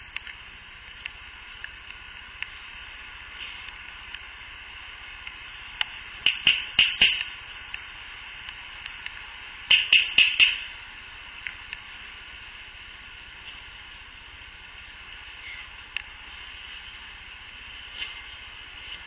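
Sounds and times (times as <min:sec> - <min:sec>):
recorder hiss: 0:00.0 - 0:19.0
sharp clicks or pops: 0:06.2 - 0:07.8, 0:09.7 - 0:10.7.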